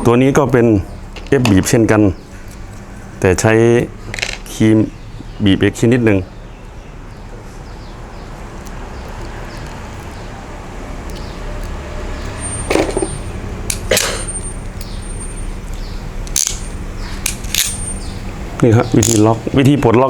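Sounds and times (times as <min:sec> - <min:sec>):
crimping tool metallic clicks: 0:15.7 - 0:18.1, 0:19.0 - 0:19.3.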